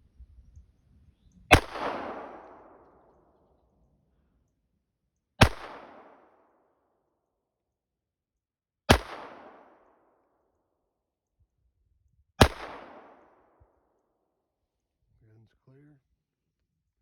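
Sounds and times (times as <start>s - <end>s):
pistol shots with echo: 1.5s - 3.6s, 5.4s - 6.6s, 8.9s - 10.2s, 12.4s - 13.6s.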